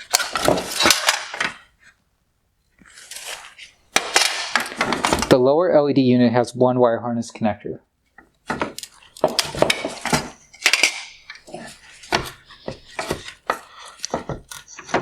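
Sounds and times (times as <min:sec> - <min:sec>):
plastic parts clicking and rattling: 0:00.0 - 0:01.7, 0:02.9 - 0:05.4, 0:08.4 - 0:15.0.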